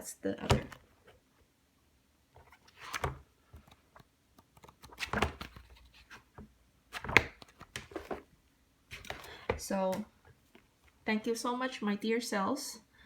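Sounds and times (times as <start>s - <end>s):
paper rustling: 2.4s - 8.2s, 8.9s - 9.6s.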